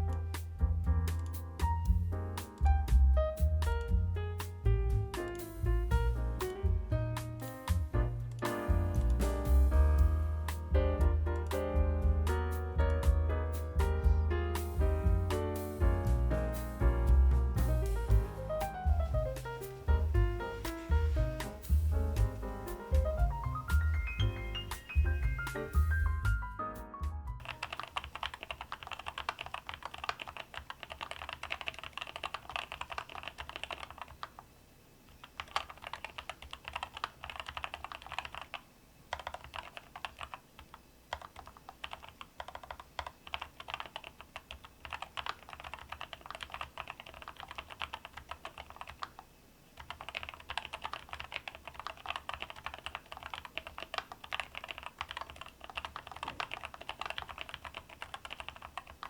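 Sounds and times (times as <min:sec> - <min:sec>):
mechanical keyboard typing: 0:27.4 - 0:34.4, 0:35.1 - 0:49.2, 0:49.8 - 0:59.0.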